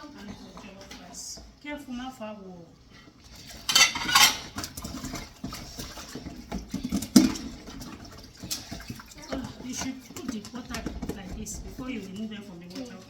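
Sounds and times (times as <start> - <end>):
water splashing: 3.1 - 13.0
plates and cutlery clattering: 3.4 - 11.9.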